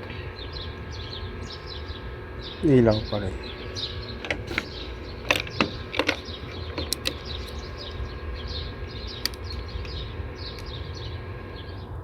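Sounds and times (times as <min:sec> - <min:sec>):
low background hum: 0:00.0 - 0:12.0
small birds chirping: 0:00.0 - 0:12.0
sharp clicks: 0:04.1 - 0:07.7, 0:08.9 - 0:10.8.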